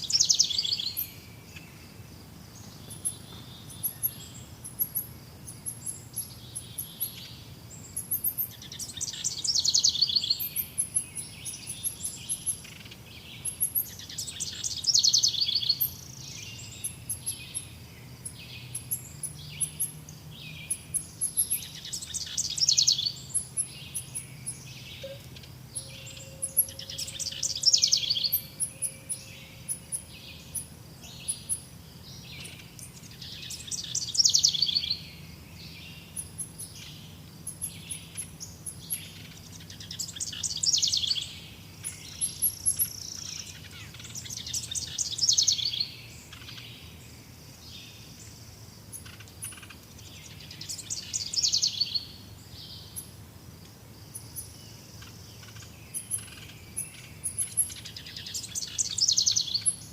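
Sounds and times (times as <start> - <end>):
bird song phrase: 0.0 - 53.2, 54.1 - 59.9
high bird chirps: 20.7 - 31.6.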